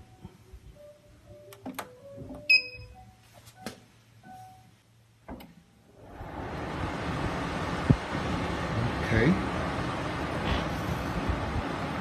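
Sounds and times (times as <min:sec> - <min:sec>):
dehumidifier fan running: 0:00.0 - 0:12.0
short beep: 0:02.5 - 0:03.7.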